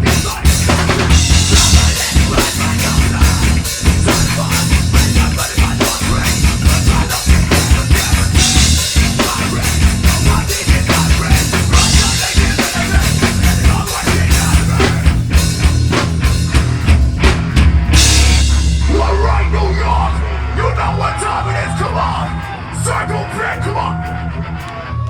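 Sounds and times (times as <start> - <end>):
held low bass note: 0.0 - 7.5, 13.0 - 22.6
metal band playing live: 0.0 - 25.0.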